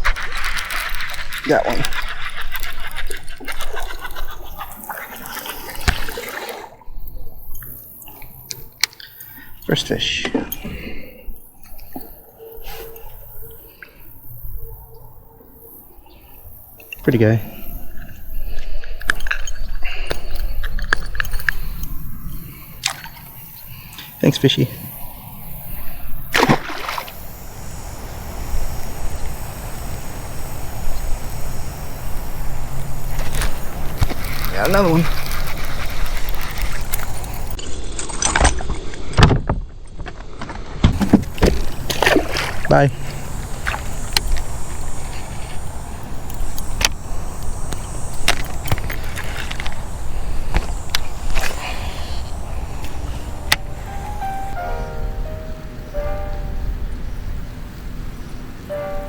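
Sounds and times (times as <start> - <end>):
water splashing and sloshing: 0.0 - 7.0, 25.8 - 29.0, 40.9 - 45.6
wind rumbling on microphone: 24.8 - 37.6, 40.9 - 59.0
short burst of noise: 50.4 - 56.6.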